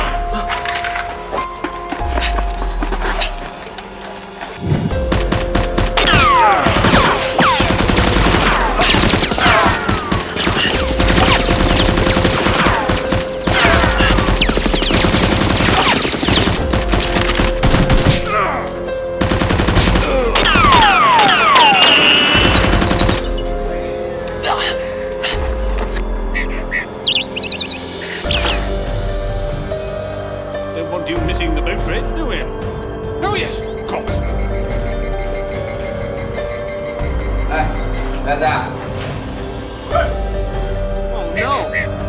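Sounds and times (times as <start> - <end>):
background music: 0.0 - 42.0
machine-gun bursts: 5.0 - 18.2, 19.2 - 23.3
falling whistles: 20.4 - 23.6, 33.7 - 38.5.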